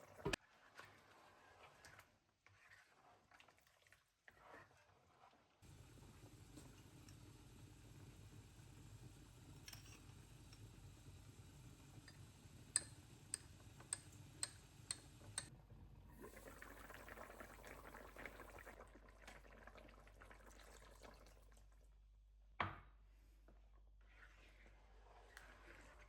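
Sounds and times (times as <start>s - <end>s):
liquid pouring: 16.1s - 21.9s.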